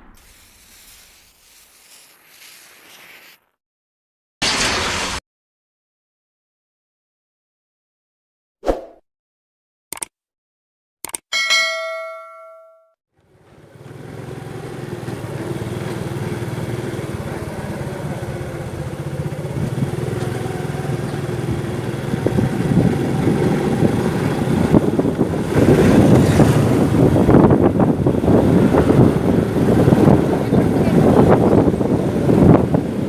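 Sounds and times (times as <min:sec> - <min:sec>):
ringing chime: 0:11.3 - 0:13.0
motorcycle engine running: 0:13.3 - 0:33.0.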